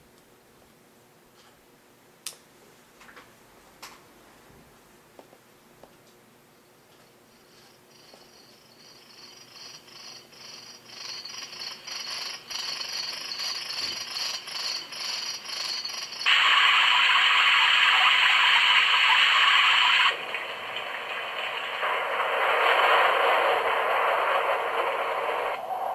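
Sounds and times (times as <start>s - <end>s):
high-pitched rhythmic pulsing: 7.3s - 25.5s
steady rushing noise: 16.3s - 25.6s.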